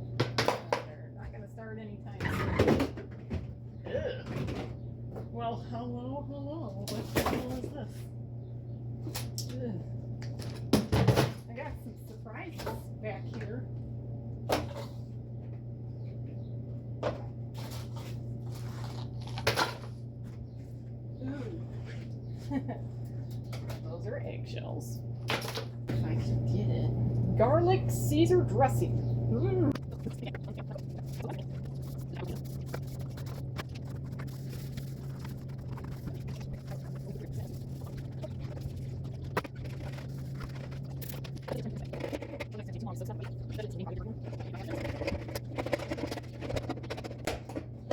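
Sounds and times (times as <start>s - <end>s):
refrigerator hum: 0.0s - 47.9s
items scraping and rustling: 17.5s - 20.8s, 30.6s - 47.9s.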